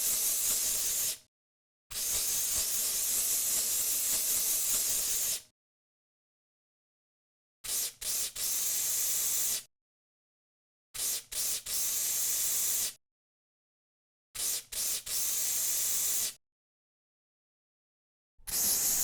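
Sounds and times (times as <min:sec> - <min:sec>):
aerosol can spraying: 0:02.0 - 0:05.4, 0:18.5 - 0:19.0.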